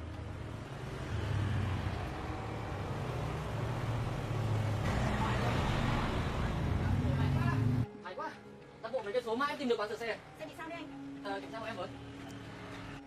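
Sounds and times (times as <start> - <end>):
vehicle engine humming: 0.0 - 7.9
street traffic: 0.0 - 13.0.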